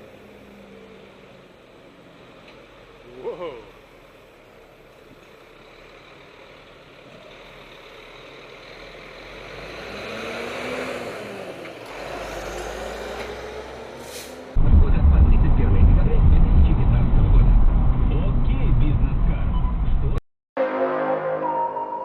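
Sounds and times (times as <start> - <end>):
road vehicle noise: 0.0 - 20.2
faint engine tone: 14.7 - 20.2.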